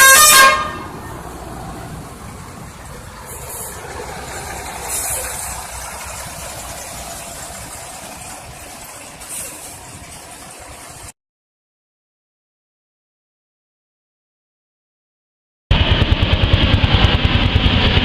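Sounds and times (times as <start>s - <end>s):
bus engine running: 0.0s - 11.2s.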